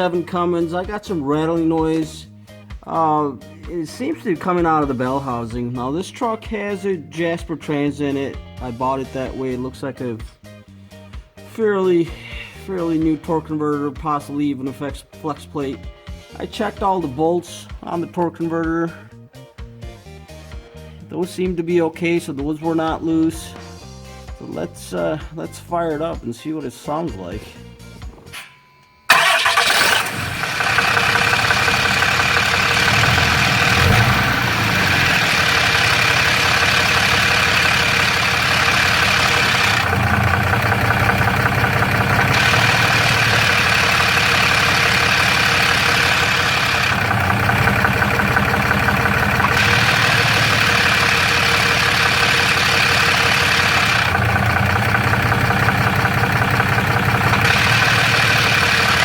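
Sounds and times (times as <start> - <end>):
diesel engine idling: 29.1 - 59.0.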